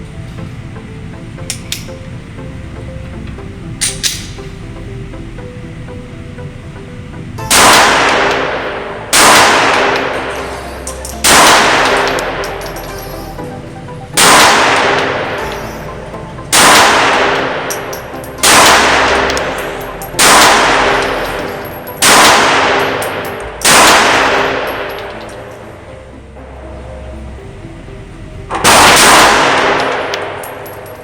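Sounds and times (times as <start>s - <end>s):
pistol shots echoing: 7.5s - 12.8s, 14.2s - 15.3s, 16.5s - 25.5s, 28.6s - 30.9s.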